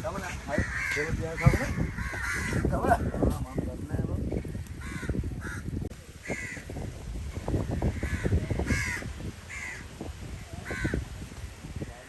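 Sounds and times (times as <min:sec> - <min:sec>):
crows cawing: 0:00.1 - 0:03.6, 0:04.7 - 0:06.8, 0:07.5 - 0:10.0, 0:10.6 - 0:11.1.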